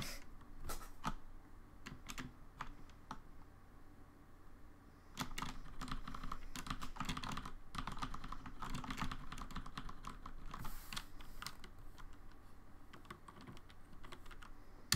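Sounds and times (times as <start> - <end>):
typing on computer keyboard: 1.8 - 3.2, 5.2 - 14.6.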